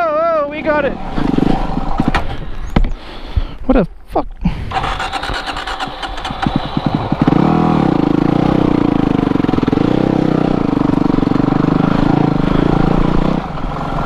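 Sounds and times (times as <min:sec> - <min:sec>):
motorcycle engine revving: 0:00.6 - 0:02.4, 0:04.7 - 0:14.0.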